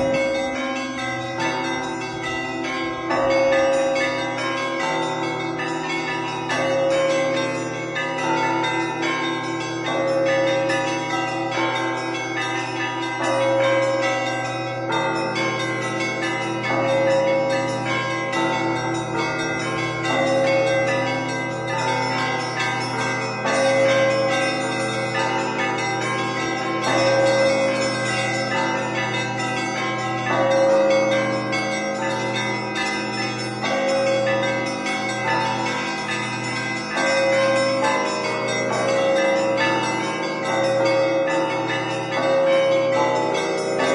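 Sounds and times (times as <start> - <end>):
low bells ringing: 0.0 - 43.9
small bells chiming fast: 0.0 - 43.9.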